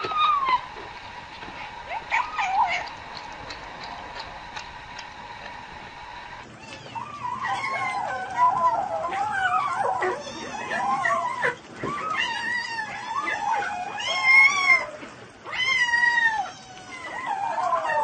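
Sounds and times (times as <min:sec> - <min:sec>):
cat meowing and yowling: 0:00.0 - 0:00.7, 0:06.6 - 0:18.0.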